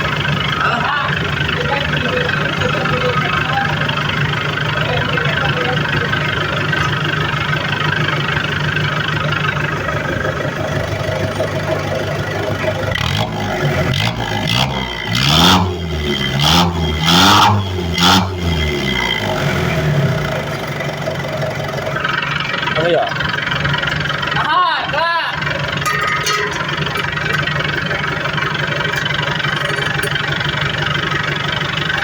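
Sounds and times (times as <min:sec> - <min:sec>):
engine idling and revving: 0:00.0 - 0:32.0.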